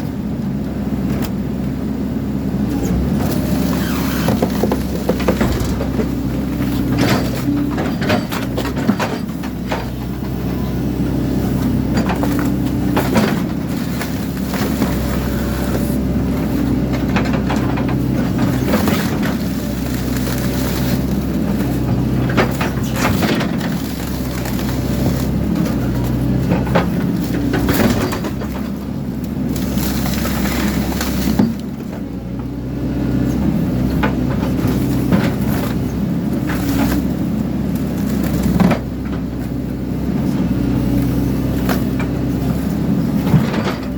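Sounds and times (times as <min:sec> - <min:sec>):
diesel engine running: 0:00.0 - 0:43.9
metal crushing and tearing: 0:17.8 - 0:28.7, 0:29.5 - 0:31.7.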